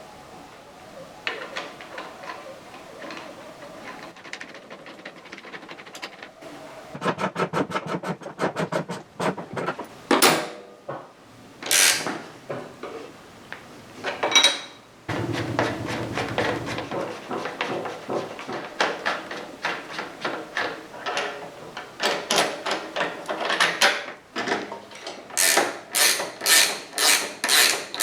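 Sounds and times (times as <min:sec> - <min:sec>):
loud hissing bursts: 0:15.1 - 0:16.9.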